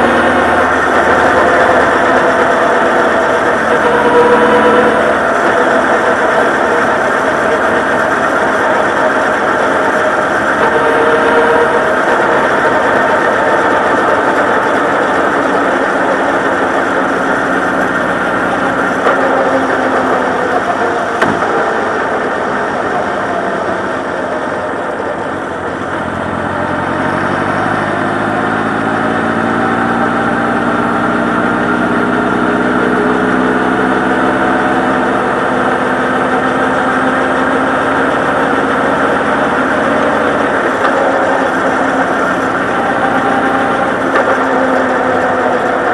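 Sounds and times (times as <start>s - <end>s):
motorcycle engine revving: 0.0s - 45.9s.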